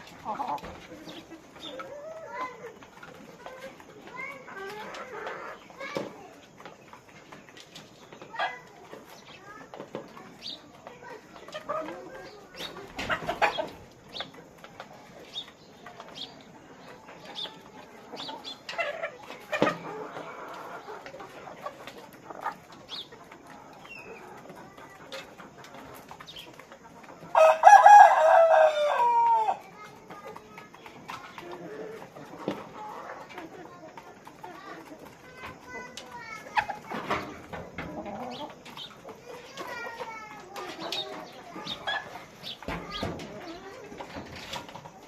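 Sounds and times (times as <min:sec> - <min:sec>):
chickens clucking: 0:00.0 - 0:45.0
rooster crowing: 0:27.3 - 0:29.6.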